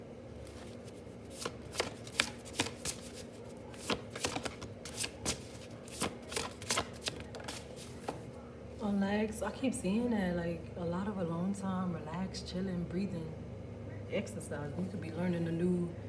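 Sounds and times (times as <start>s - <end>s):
cards being shuffled: 0.4s - 8.3s.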